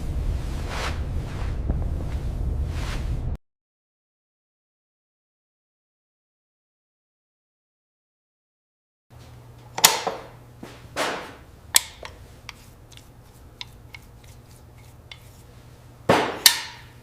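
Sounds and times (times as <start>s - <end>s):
low steady hum: 0.0s - 3.4s, 9.1s - 17.0s
tools knocking and clicking: 9.8s - 10.2s, 11.7s - 15.4s, 16.4s - 16.9s.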